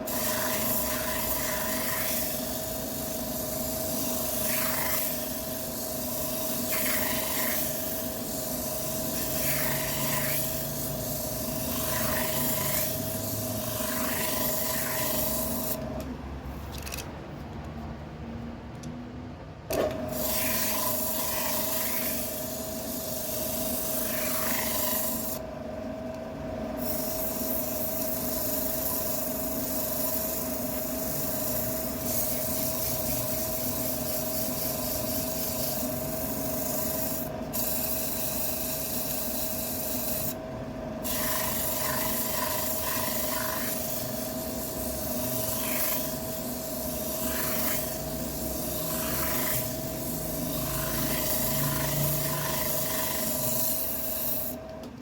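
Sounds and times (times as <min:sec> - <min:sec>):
tool rubbing spinning wood: 0:00.0 - 0:16.0, 0:20.1 - 0:25.4, 0:41.0 - 0:54.7.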